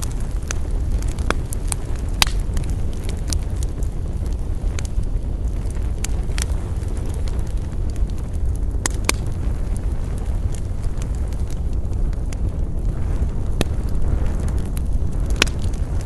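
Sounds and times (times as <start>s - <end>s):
campfire crackling and popping: 0.0s - 16.0s.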